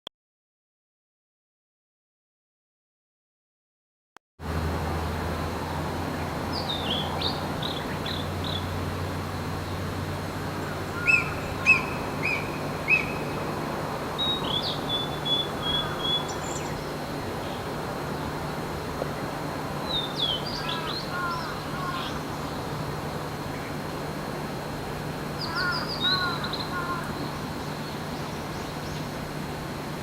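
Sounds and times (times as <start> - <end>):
small birds chirping: 6.2 - 8.8, 14.2 - 18.3, 19.9 - 22.7.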